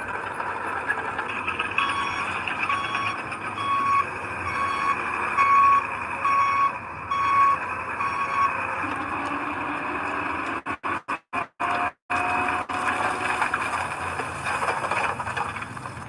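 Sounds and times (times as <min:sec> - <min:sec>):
diesel engine running: 0:00.0 - 0:16.0
reversing alarm beeping: 0:01.8 - 0:09.3.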